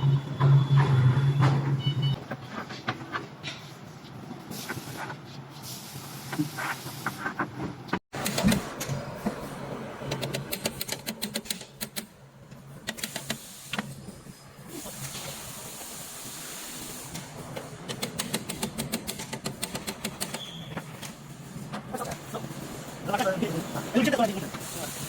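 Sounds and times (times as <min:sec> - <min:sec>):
rapid mechanical clicking: 0:10.1 - 0:12.1, 0:12.8 - 0:13.8, 0:17.8 - 0:21.2.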